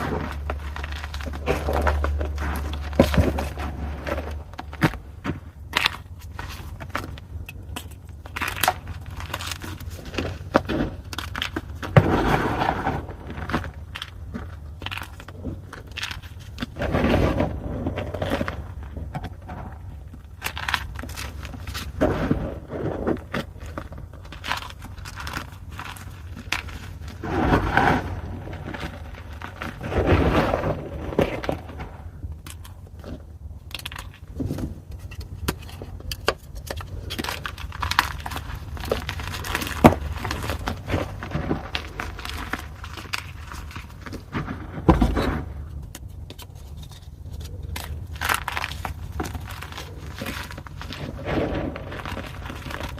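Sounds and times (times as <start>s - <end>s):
chalk blocks crunching: 0.0s - 52.9s
low steady hum: 0.0s - 52.9s.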